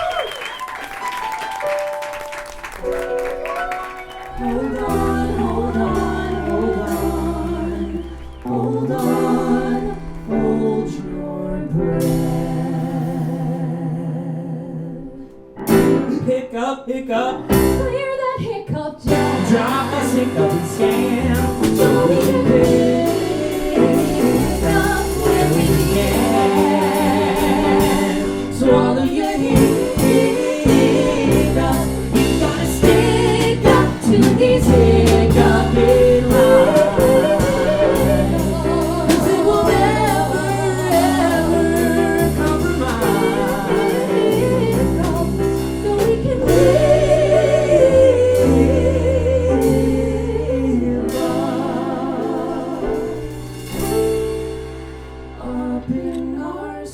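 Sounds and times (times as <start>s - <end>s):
live band playing: 0.0s - 10.3s, 19.1s - 55.8s
woman singing: 4.1s - 15.2s, 16.1s - 53.1s, 55.4s - 56.9s.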